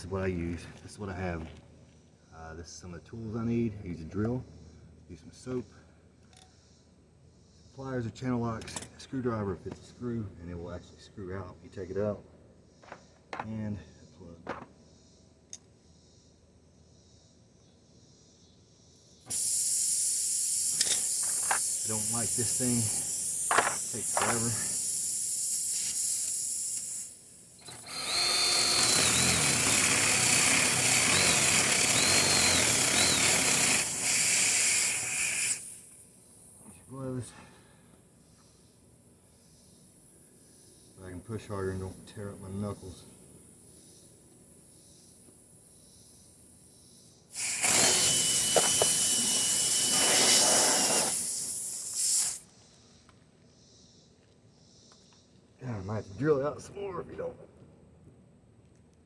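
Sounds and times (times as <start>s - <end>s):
steady hiss: 18.4s - 56.9s
air hissing from tire puncture: 19.3s - 27.7s, 33.3s - 36.8s, 47.3s - 52.6s
electric drill whining: 20.5s - 24.9s, 25.7s - 36.0s, 47.3s - 52.4s.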